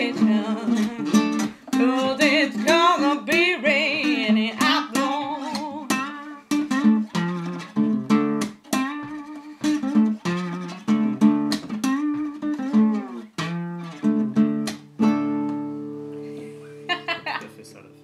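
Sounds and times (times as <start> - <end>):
acoustic guitar playing slow blues: 0.0 - 18.0.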